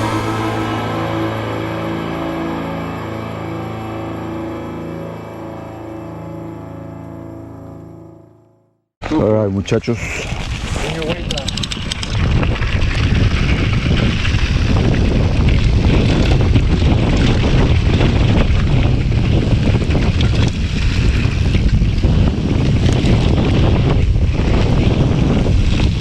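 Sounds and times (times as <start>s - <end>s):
wind buffeting microphone: 10.2s - 26.0s.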